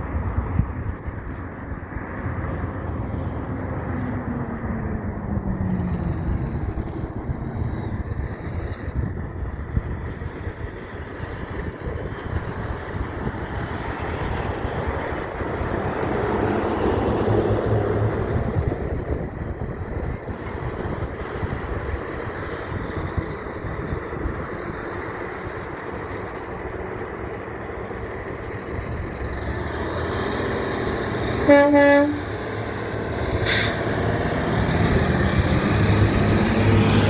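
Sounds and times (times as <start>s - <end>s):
heavy truck driving past: 0.0s - 37.0s.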